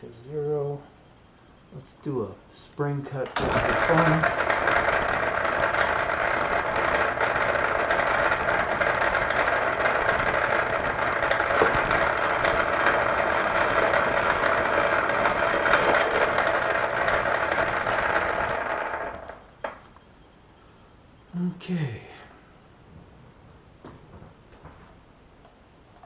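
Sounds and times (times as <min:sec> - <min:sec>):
metal lathe running: 0:03.4 - 0:19.8.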